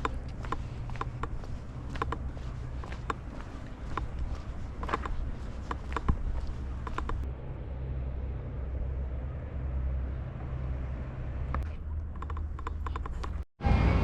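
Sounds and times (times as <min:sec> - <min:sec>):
distant voices: 0:00.0 - 0:07.3.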